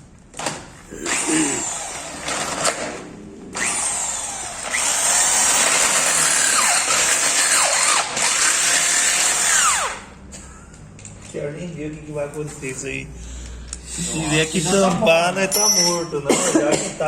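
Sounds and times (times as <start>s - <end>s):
electric drill whining: 1.0s - 3.0s, 3.6s - 10.1s.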